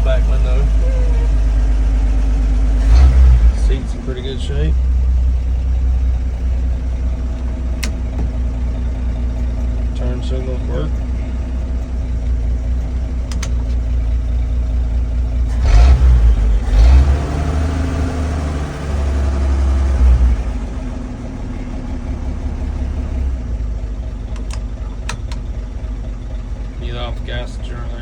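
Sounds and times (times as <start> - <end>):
truck engine idling and revving: 0.0 - 28.0
light clicks: 24.3 - 25.5.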